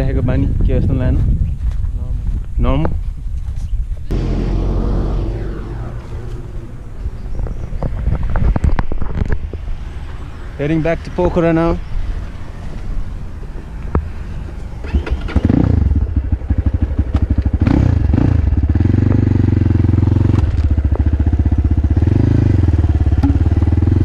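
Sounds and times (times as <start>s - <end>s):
dirt bike engine revving: 4.1s - 7.8s.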